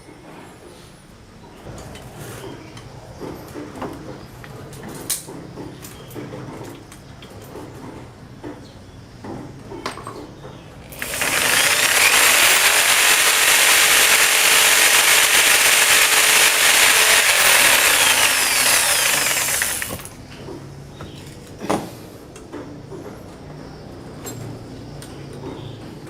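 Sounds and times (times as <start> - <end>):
power tool running on metal: 10.9 - 20.2.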